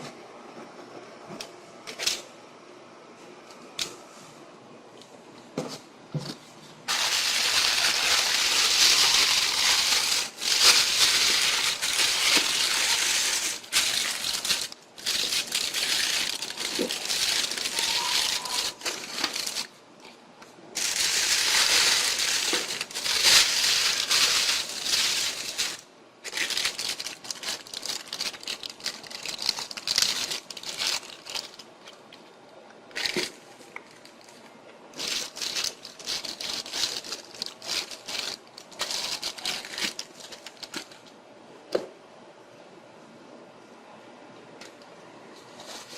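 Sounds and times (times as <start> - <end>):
packaging crinkling and rustling: 6.9 - 19.8, 20.8 - 32.3, 32.9 - 41.1.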